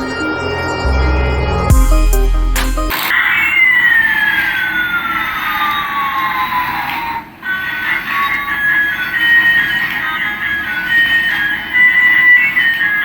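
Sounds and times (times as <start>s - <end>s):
bass-heavy electronic music: 0.0s - 3.0s
falling synth tone: 0.0s - 3.1s
sharp hits: 0.0s - 3.1s.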